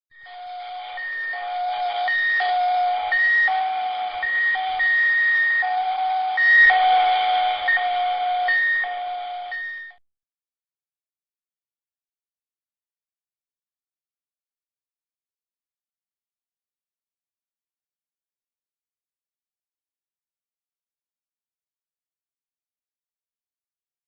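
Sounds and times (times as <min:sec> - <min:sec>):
electronic beeping tones: 0:00.2 - 0:10.0.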